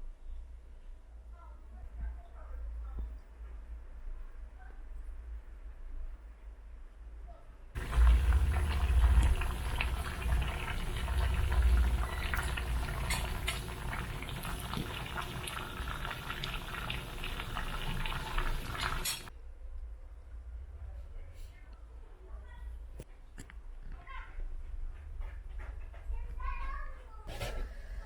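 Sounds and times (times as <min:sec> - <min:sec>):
food bubbling and hissing: 0:07.8 - 0:19.3
low burner rumble: 0:07.8 - 0:22.6.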